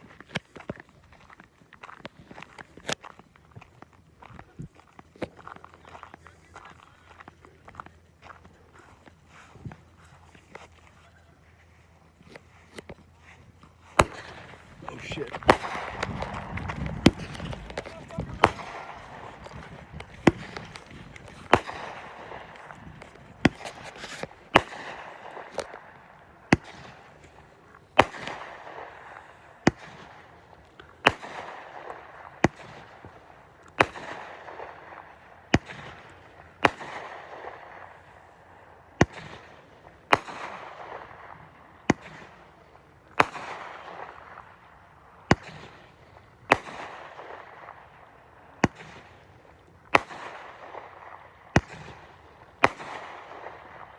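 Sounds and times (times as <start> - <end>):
fireworks crackling: 12.2 - 33.2
fireworks bangs: 13.9 - 30.2.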